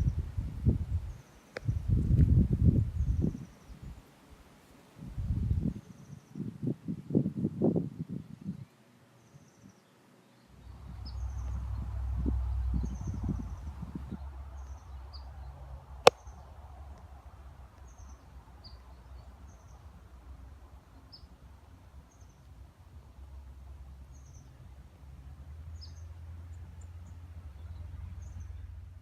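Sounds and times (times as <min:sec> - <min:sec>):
low steady rumble: 0:10.6 - 0:29.0.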